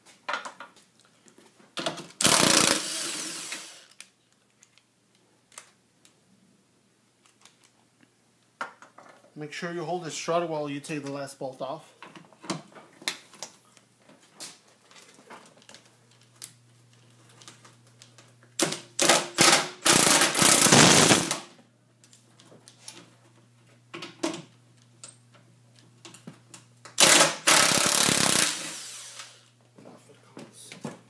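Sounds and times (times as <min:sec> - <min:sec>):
power tool on bolts: 0:02.2 - 0:03.9, 0:18.6 - 0:21.4, 0:27.0 - 0:29.4.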